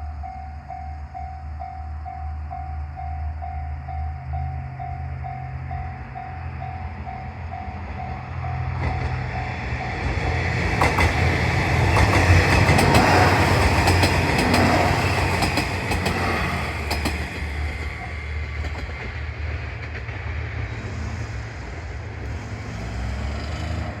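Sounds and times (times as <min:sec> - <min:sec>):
level-crossing warning bell: 0:00.0 - 0:10.2
diesel train passing: 0:00.0 - 0:24.0.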